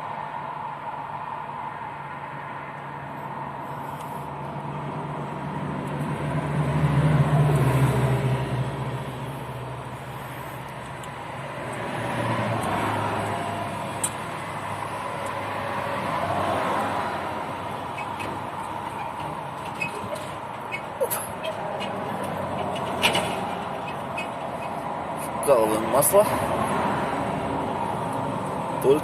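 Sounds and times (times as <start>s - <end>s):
highway traffic passing: 0.0s - 29.0s.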